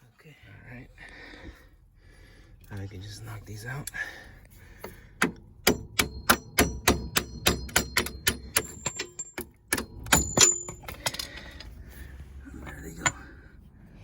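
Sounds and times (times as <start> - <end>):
hammer clanging on metal: 5.2 - 11.6.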